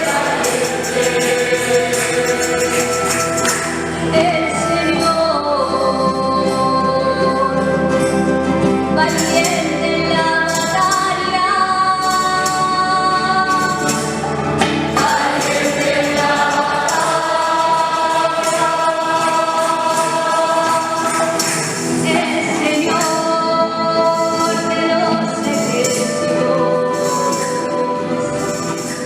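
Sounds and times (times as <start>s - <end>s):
tambourine shaking: 0.0s - 5.2s, 13.4s - 29.0s
choir singing a hymn: 0.0s - 6.1s, 14.9s - 29.0s.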